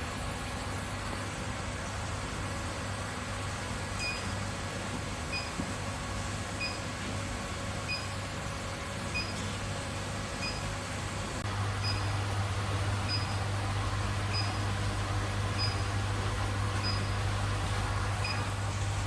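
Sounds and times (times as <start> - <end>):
machine electrical hum and hiss: 0.0 - 19.0
short high beep: 7.8 - 19.0.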